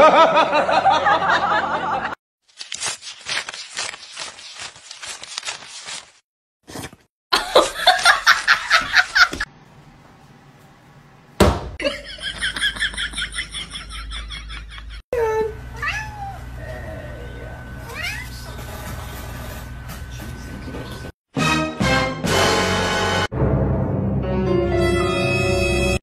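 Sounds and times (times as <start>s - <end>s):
people laughing in bursts: 0.0s - 2.2s, 7.4s - 9.5s, 11.8s - 15.0s.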